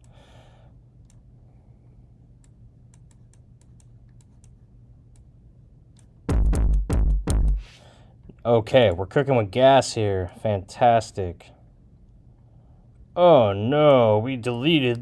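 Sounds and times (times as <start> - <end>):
faint computer clicking: 1.0 - 1.3, 2.4 - 5.3
distorted electronic beat: 6.3 - 7.7.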